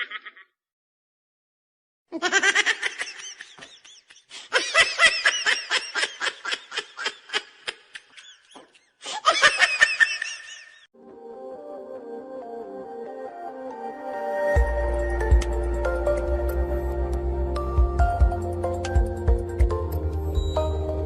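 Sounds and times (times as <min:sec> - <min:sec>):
person laughing: 0:00.0 - 0:00.5, 0:02.1 - 0:10.9.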